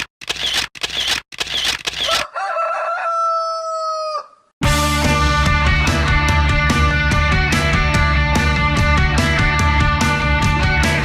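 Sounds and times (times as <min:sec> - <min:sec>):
rooster crowing: 0:02.0 - 0:04.5
rock band playing: 0:04.6 - 0:11.0.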